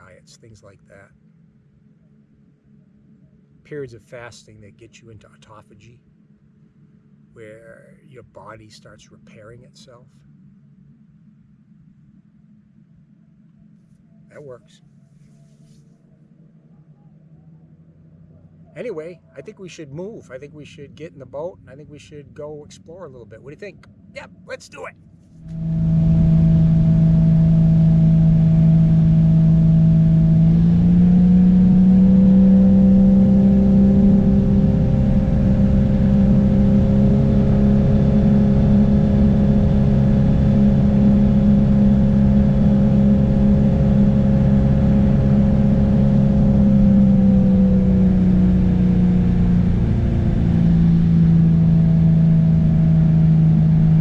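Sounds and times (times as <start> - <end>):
engine running under load: 25.4 - 54.0.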